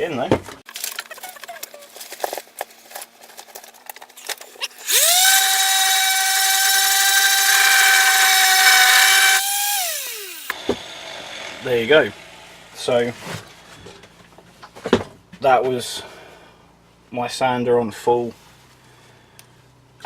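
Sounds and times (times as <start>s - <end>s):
sander winding down: 4.7s - 13.1s
electric sander whining: 4.7s - 13.6s.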